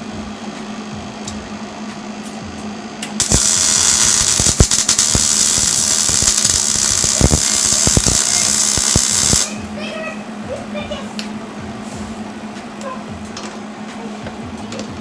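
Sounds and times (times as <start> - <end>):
steady low hum: 0.0 - 15.0
welding arc crackling and popping: 3.0 - 9.6.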